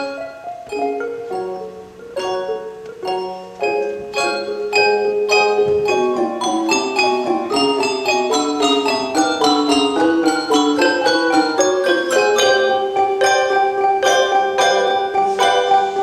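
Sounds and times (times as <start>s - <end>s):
handbell choir playing: 0.7s - 16.0s.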